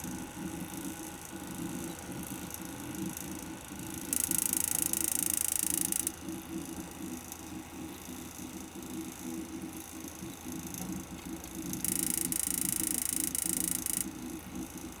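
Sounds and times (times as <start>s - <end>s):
high-pitched buzzing rattle: 4.0s - 6.2s, 11.7s - 14.2s.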